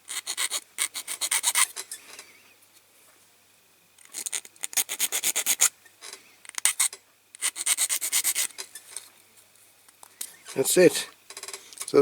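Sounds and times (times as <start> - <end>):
hand file rasping on metal: 0.1 - 1.7, 4.3 - 5.7, 6.6 - 8.5.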